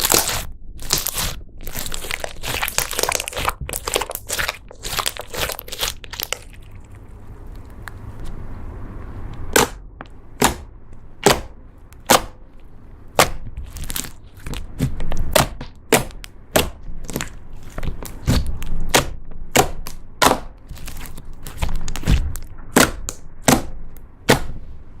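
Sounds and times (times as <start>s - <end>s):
slime popping: 0.0s - 7.0s
low rumble of handling: 5.9s - 25.0s.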